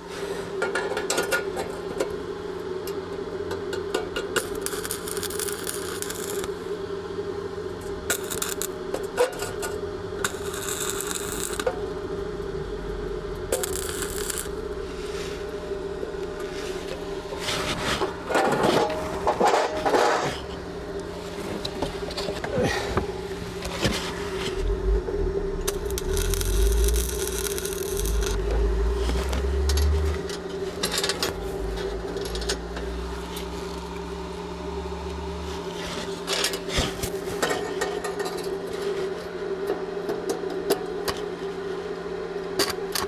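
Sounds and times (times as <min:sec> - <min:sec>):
steady hum: 0:00.0 - 0:43.0
metal scraping and clinking: 0:17.4 - 0:20.6
low rumble: 0:24.2 - 0:30.4.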